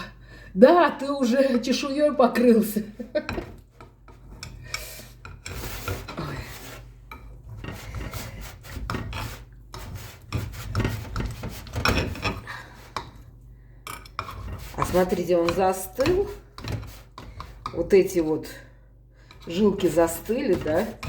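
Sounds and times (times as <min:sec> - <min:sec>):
knife scraping against dish: 0:03.3 - 0:13.1, 0:13.9 - 0:18.2, 0:19.2 - 0:21.0.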